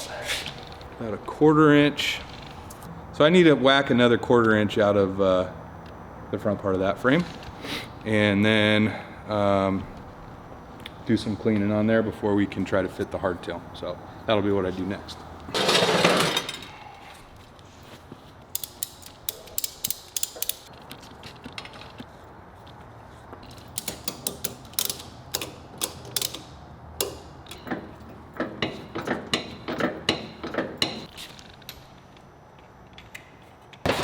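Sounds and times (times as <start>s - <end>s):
metal parts clicking and tapping: 18.5s - 20.7s, 23.4s - 31.1s.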